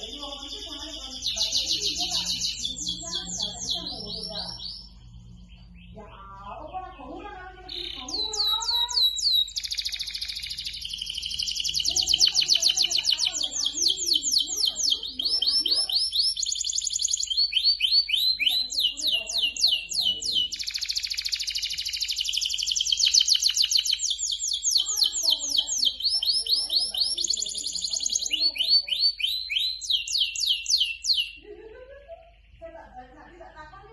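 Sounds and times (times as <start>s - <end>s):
canary singing trills: 0.0s - 33.1s.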